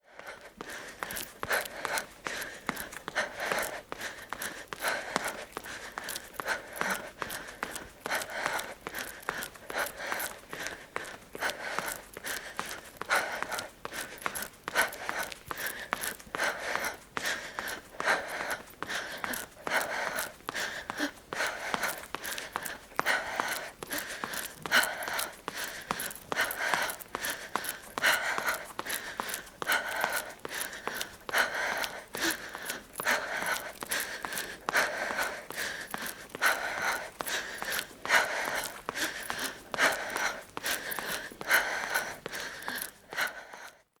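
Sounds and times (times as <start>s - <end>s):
girl panting: 0.0s - 44.0s
footsteps on pavement: 0.2s - 43.7s.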